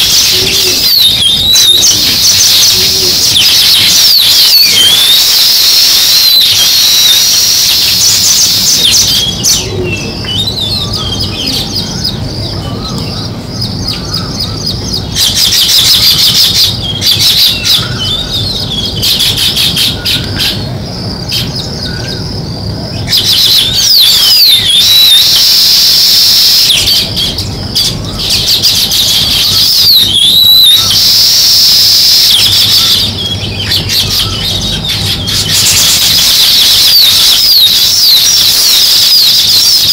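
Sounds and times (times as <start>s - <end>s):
sparrows chirping: 0.0s - 39.9s.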